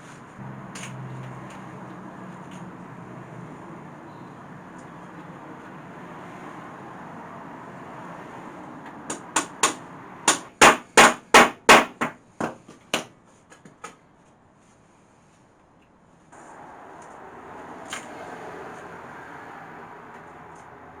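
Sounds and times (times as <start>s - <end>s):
hammer driving nails into wood: 9.1s - 13.1s.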